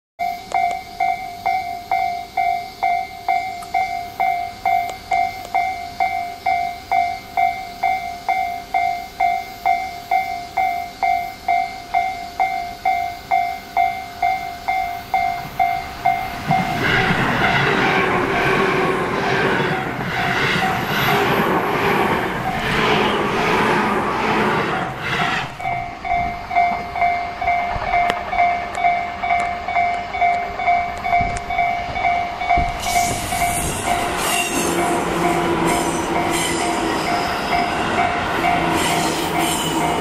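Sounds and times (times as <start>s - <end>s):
electric train arriving: 0.2s - 40.0s
level crossing bell ringing: 25.6s - 32.8s.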